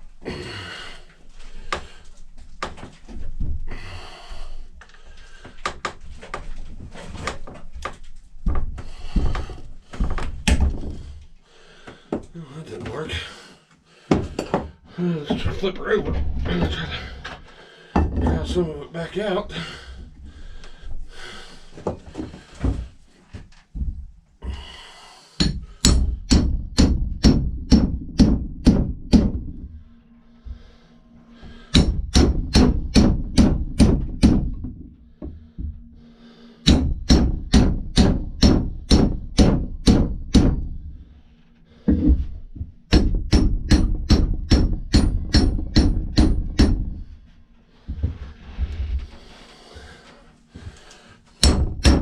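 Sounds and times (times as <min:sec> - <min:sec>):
hammer striking steel: 0:25.4 - 0:29.4, 0:31.7 - 0:34.5, 0:36.6 - 0:40.7, 0:42.9 - 0:47.0, 0:51.4 - 0:52.0.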